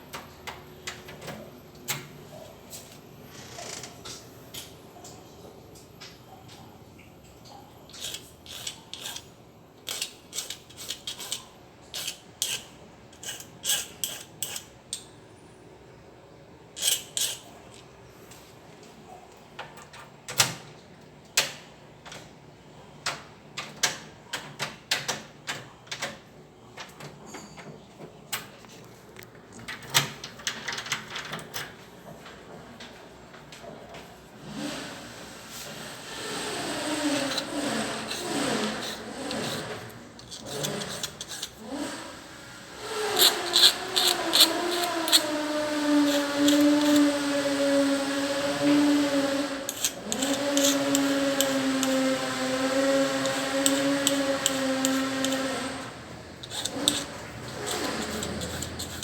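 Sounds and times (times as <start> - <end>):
metal scraping: 36.0 - 42.0, 42.8 - 59.0.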